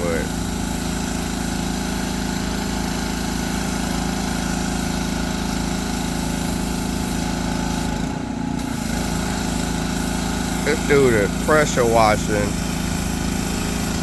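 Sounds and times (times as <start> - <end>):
pressure washer petrol engine: 0.0 - 14.0.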